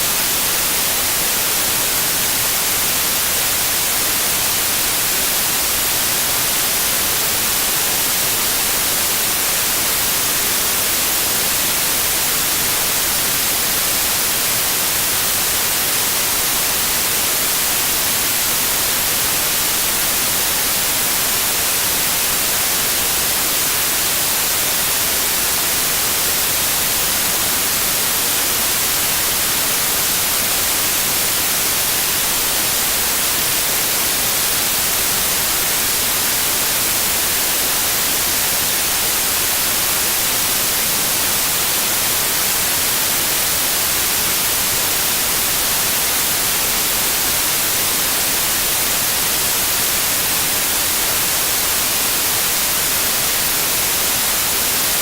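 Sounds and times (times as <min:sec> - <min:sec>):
white noise hiss: 0:00.0 - 0:55.0.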